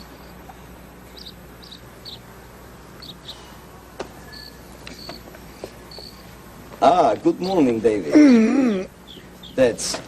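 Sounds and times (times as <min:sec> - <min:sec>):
steady background hum: 0:00.0 - 0:10.0
high-pitched bird chirps: 0:01.1 - 0:02.3, 0:03.0 - 0:03.4, 0:04.2 - 0:05.2, 0:05.9 - 0:06.2, 0:08.7 - 0:09.6.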